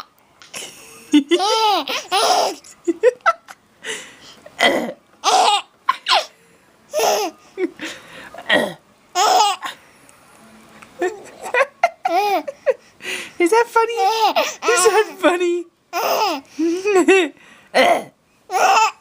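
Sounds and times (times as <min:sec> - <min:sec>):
baby laughing: 0:01.2 - 0:03.4, 0:05.2 - 0:06.3, 0:06.9 - 0:07.4, 0:09.2 - 0:09.7, 0:11.0 - 0:12.8, 0:13.9 - 0:15.2, 0:15.9 - 0:17.1, 0:18.5 - 0:19.0.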